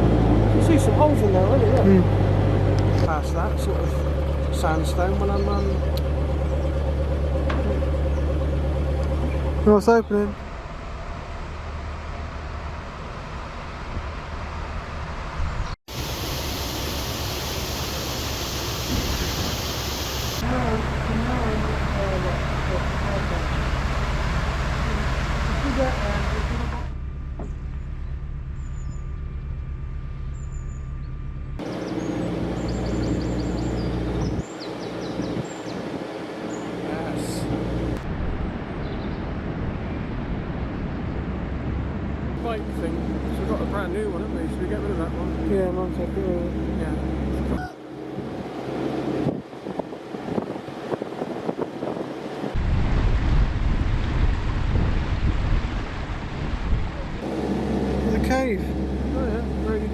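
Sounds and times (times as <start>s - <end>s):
boat diesel engine running: 0.0s - 38.1s, 41.4s - 50.9s, 55.1s - 59.9s
birds chirping: 31.6s - 37.5s
wind buffeting microphone: 49.2s - 57.2s.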